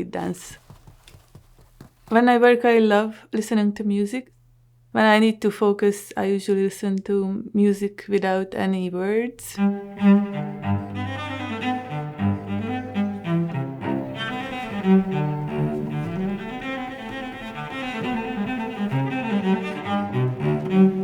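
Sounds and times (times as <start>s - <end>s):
cello and low bowed strings: 9.6s - 21.0s.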